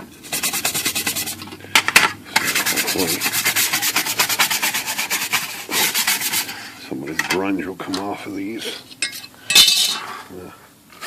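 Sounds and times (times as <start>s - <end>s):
brush scrubbing panels: 0.0s - 1.5s, 2.4s - 6.7s.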